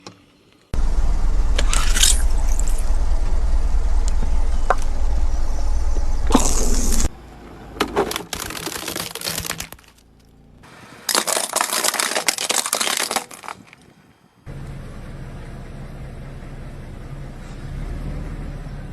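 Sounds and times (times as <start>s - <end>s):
car engine running low: 0.8s - 8.2s, 10.0s - 10.6s, 14.5s - 18.9s
plastic toy crunching under tyre: 7.8s - 10.3s, 11.1s - 13.9s.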